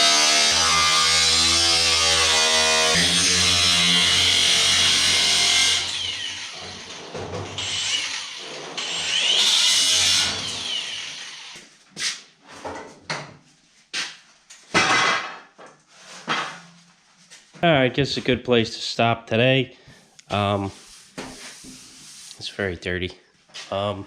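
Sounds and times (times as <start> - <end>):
cutoff wheel cutting metal: 0.0 - 11.6.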